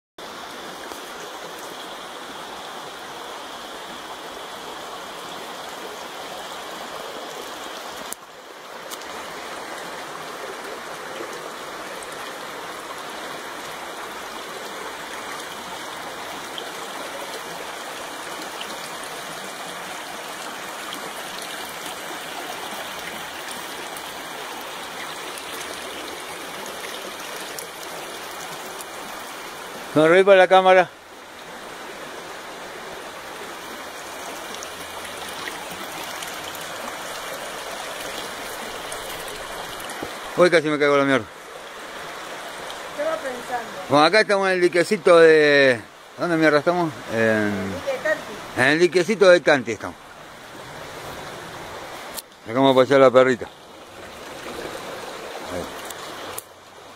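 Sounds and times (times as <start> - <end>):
running water rushing: 0.2 - 56.9.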